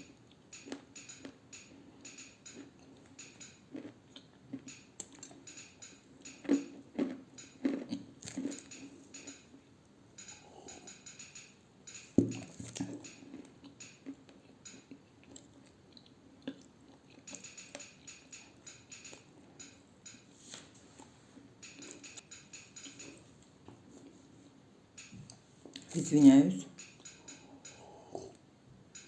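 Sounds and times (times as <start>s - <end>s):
clay being bitten and chewed: 2.5s - 5.4s, 6.2s - 9.3s.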